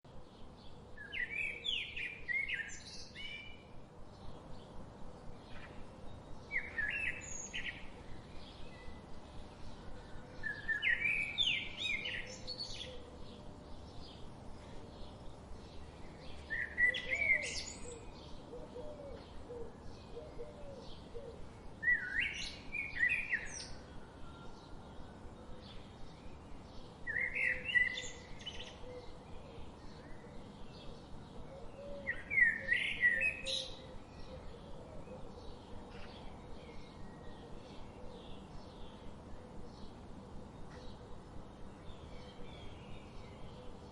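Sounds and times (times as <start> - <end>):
songbird chirps and trills: 0.0 - 43.9
faint bird chirps: 15.8 - 41.1.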